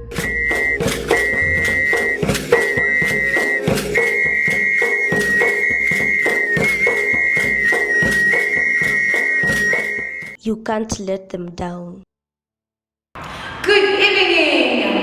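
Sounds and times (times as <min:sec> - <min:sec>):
steady beat: 0:00.0 - 0:10.4
whistle-like melody: 0:00.0 - 0:10.4.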